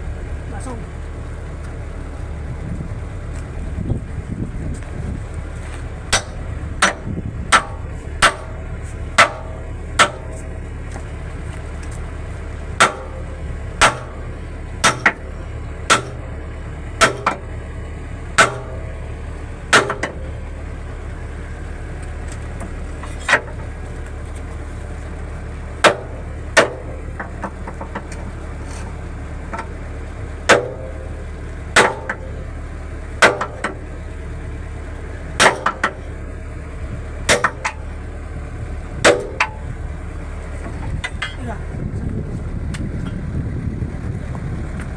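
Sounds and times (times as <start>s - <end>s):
low engine hum: 0.0s - 44.9s
hammer striking metal: 37.3s - 37.8s.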